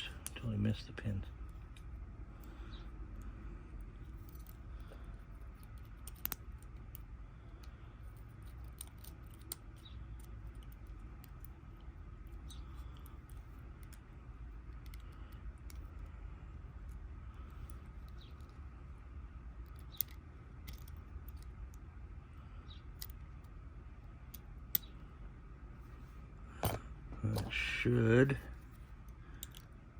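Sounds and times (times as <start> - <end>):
small metallic clicks and taps: 4.2 - 7.8, 14.7 - 16.1, 19.6 - 21.8, 22.9 - 23.6, 29.0 - 29.7.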